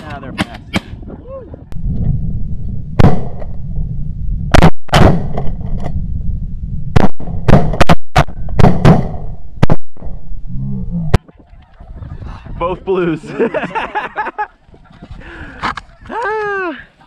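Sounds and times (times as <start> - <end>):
wind on microphone: 0.6 - 4.6, 10.1 - 13.0, 14.6 - 16.2
shotgun blasts: 4.5 - 5.6, 6.9 - 10.1.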